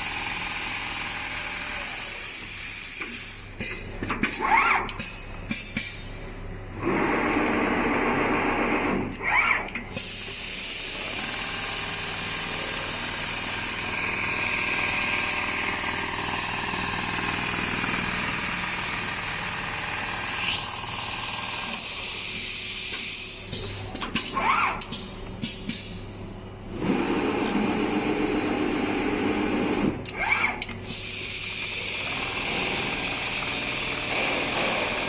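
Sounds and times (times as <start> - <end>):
sewing machine running: 10.8 - 21.8, 31.7 - 35.0.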